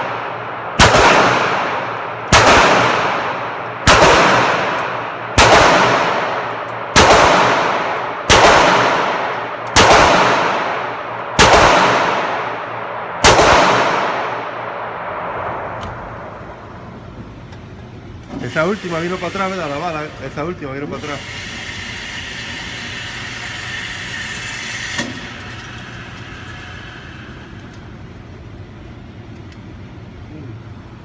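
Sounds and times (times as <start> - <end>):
gunshots with echo: 0.0 - 16.4.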